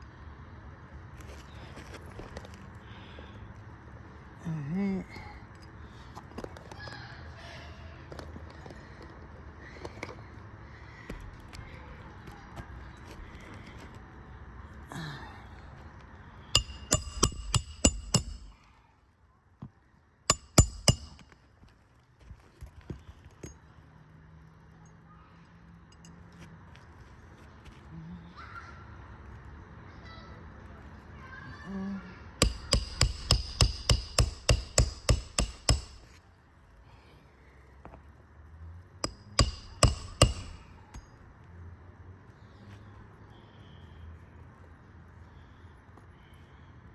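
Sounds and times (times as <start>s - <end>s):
hammer striking nails: 16.6s - 18.6s, 20.3s - 21.4s, 32.4s - 36.2s, 39.0s - 41.1s.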